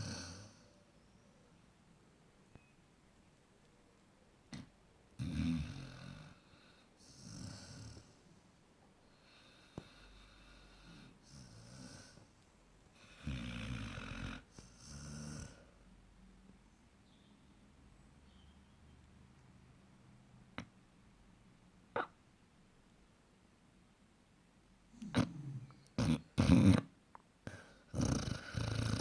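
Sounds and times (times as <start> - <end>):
dog snoring: 0.0 - 0.7, 5.2 - 8.2, 13.0 - 15.7, 25.0 - 26.9, 27.5 - 29.0.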